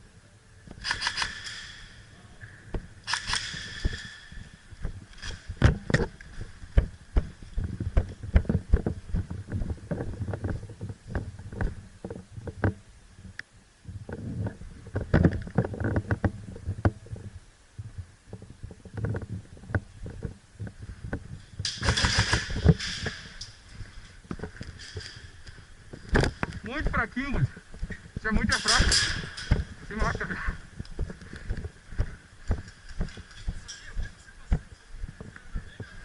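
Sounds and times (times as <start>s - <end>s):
footsteps: 0.6s - 36.0s
sharp rattling burst: 0.8s - 2.0s, 21.7s - 23.4s.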